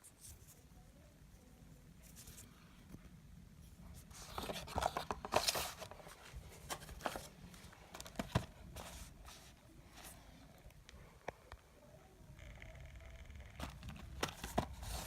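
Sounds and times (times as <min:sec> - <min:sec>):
packaging rustling and crinkling: 0:04.1 - 0:09.6, 0:13.6 - 0:15.0.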